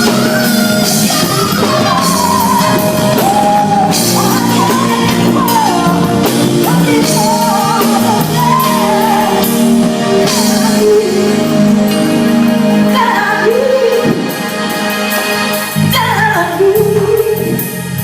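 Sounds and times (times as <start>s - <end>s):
person singing: 0.0s - 17.8s
live band playing: 0.0s - 18.0s.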